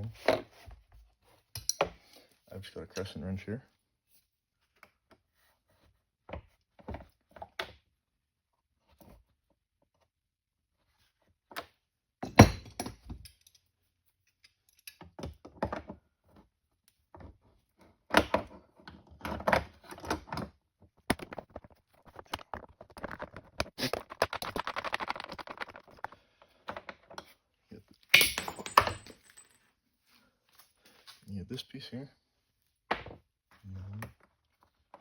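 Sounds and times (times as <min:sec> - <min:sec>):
rapid rattling: 0:23.0 - 0:26.2.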